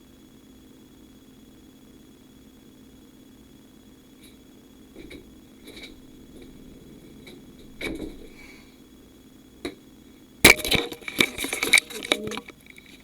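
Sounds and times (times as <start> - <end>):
clicks and crackles: 5.0 - 8.7, 10.5 - 13.0.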